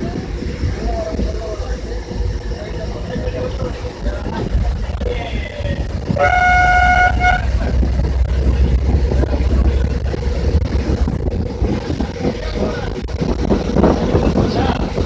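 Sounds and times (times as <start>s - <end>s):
bus engine rumble: 0.0s - 15.0s
vehicle horn: 6.2s - 7.8s.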